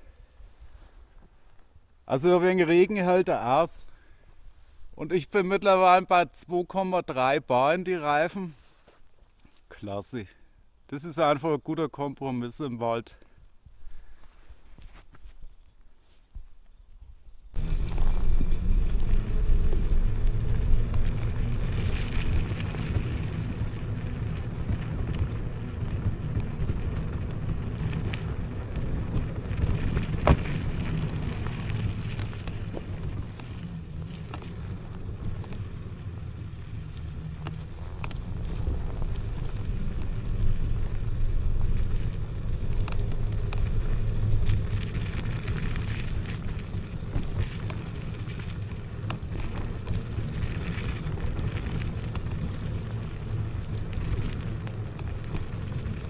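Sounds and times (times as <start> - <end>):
wind rumbling on microphone: 16.3 - 56.0
electric scooter rolling: 17.5 - 56.0.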